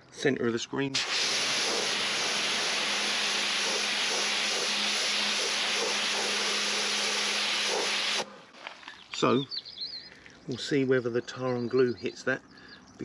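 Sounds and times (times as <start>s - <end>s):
pressure washer spray hissing: 1.0s - 8.3s
washer motor humming: 1.0s - 8.3s.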